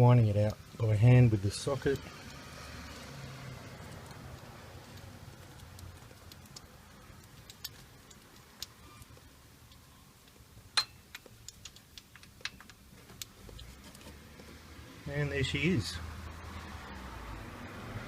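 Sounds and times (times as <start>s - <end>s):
small metallic clicks: 3.9s - 14.5s.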